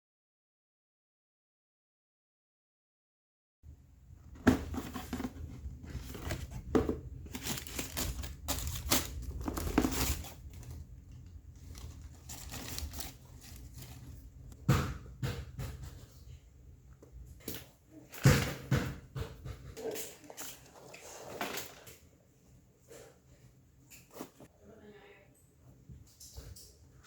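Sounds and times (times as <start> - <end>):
paper crinkling and rustling: 4.4 - 14.5.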